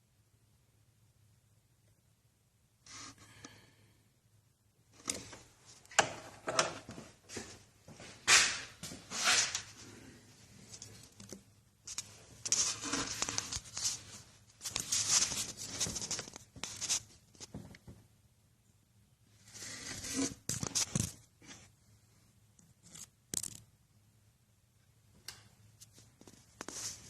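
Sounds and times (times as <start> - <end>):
rustling and scraping handling: 5.0 - 18.0, 19.4 - 21.8, 25.8 - 27.0.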